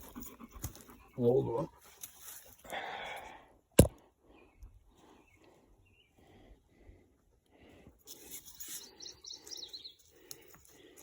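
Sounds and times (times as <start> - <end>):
dog panting: 0.0 - 1.9.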